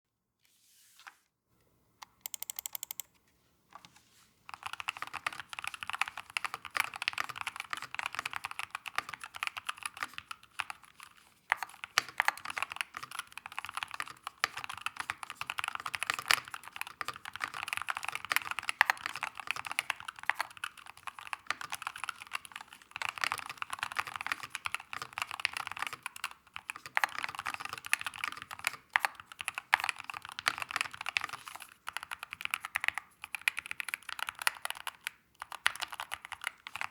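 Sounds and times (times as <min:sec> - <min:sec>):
fast keyboard typing: 0:02.2 - 0:03.1, 0:04.5 - 0:36.9.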